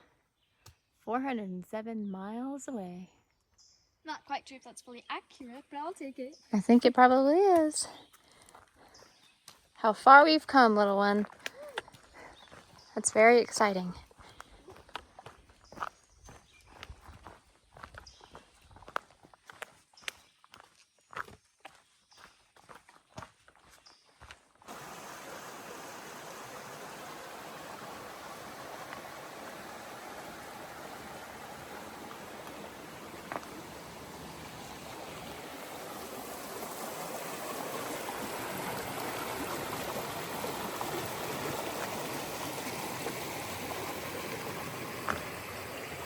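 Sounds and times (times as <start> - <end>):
stream water rushing: 24.7 - 46.0.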